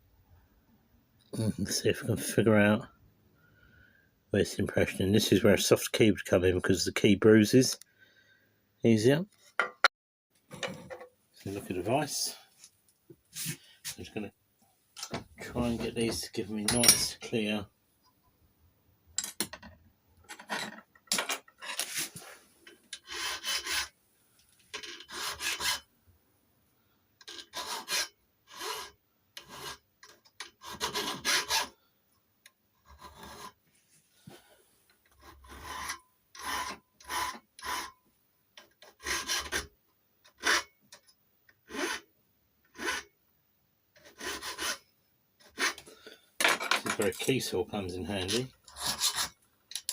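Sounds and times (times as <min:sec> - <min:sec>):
hand file rasping on metal: 0:23.0 - 0:23.9, 0:24.8 - 0:25.9, 0:27.3 - 0:29.8, 0:30.5 - 0:31.7, 0:35.1 - 0:38.0, 0:38.8 - 0:39.7, 0:40.3 - 0:40.7, 0:41.6 - 0:42.0, 0:42.7 - 0:43.1, 0:44.0 - 0:44.8, 0:45.4 - 0:45.8, 0:48.7 - 0:49.4.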